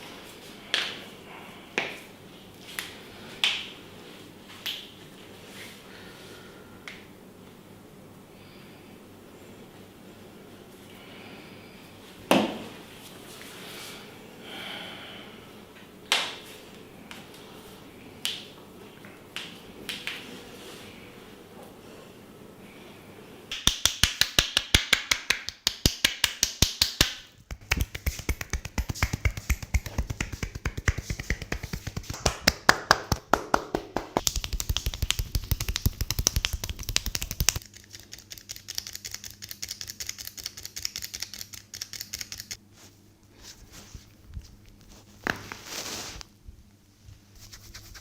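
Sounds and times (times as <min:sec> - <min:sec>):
rapid cracking pops: 0:27.5 - 0:42.6.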